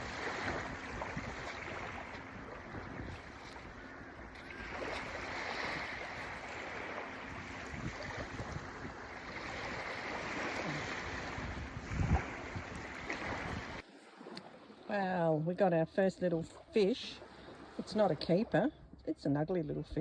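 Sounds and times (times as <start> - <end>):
surf breaking on beach: 0.0 - 13.8
wind buffeting microphone: 0.0 - 13.8.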